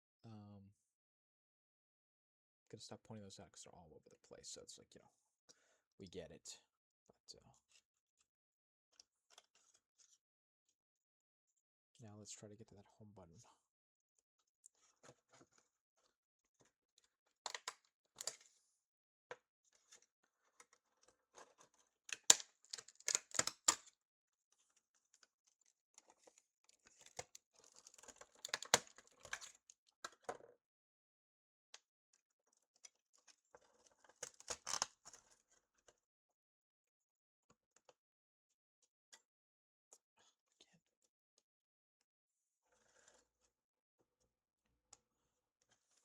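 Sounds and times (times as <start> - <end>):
small tools clicking and tapping: 26.9 - 30.3.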